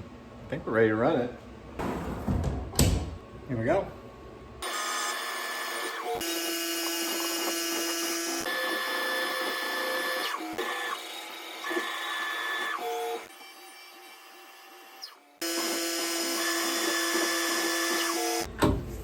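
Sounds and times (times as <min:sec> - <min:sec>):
mill motors whining: 0:04.6 - 0:19.0.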